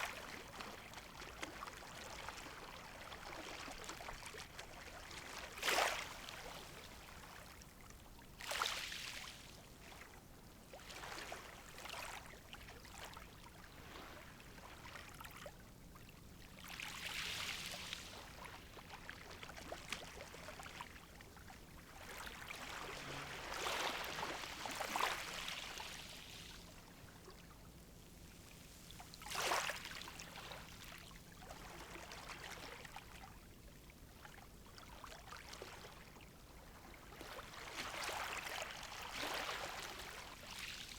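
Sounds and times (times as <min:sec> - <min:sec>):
sea waves lapping on shore: 0:16.7 - 0:27.2.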